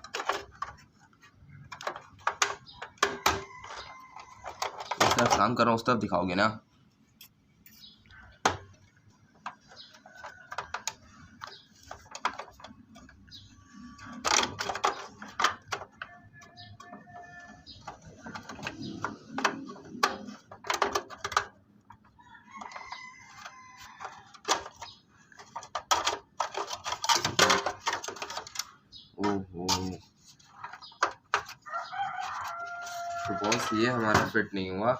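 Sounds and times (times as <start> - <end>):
plastic computer case clicking: 0.0 - 5.6, 9.4 - 22.0, 22.6 - 30.0.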